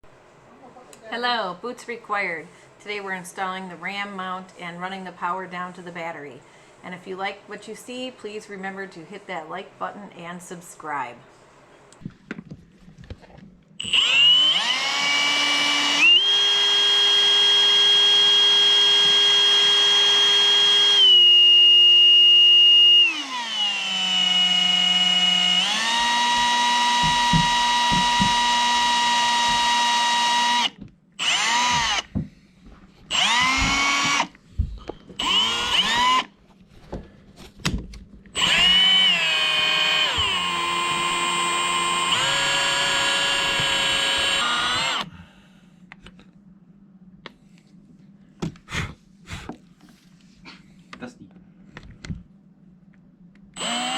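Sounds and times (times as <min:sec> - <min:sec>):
power drill motor whining: 0:13.8 - 0:32.1, 0:33.1 - 0:34.4, 0:35.2 - 0:36.3, 0:38.4 - 0:45.1, 0:53.6 - 0:53.9.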